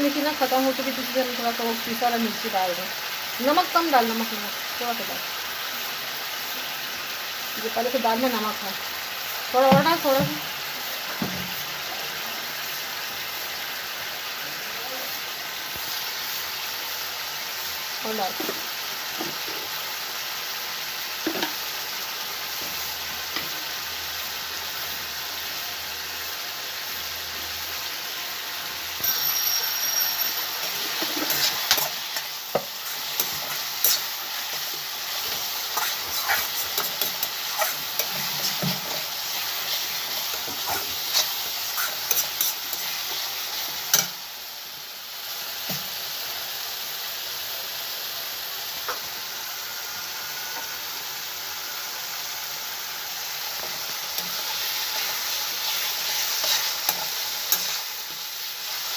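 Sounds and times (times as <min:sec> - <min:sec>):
spices sizzling in oil: 0:00.0 - 0:58.9
metal spoon scraping pan: 0:29.1 - 0:43.3, 0:56.1 - 0:57.9.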